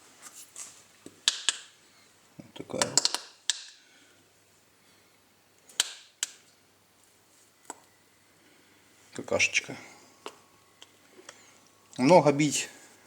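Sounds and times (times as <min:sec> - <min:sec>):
hard objects clicking on workbench: 0:02.8 - 0:03.7.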